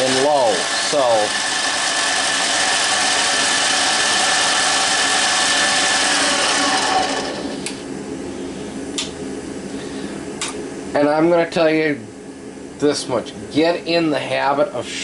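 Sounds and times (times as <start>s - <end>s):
lathe whirring with gear whine: 0.0s - 7.9s.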